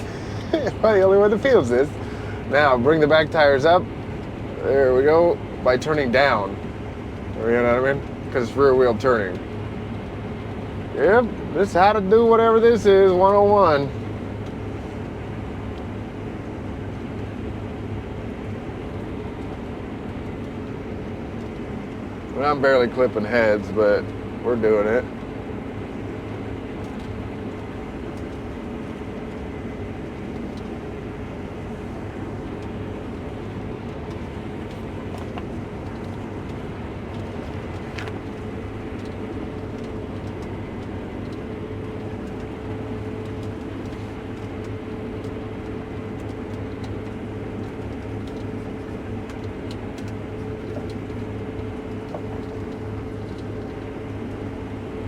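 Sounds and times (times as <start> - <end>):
combine harvester drone: 0.0 - 55.0.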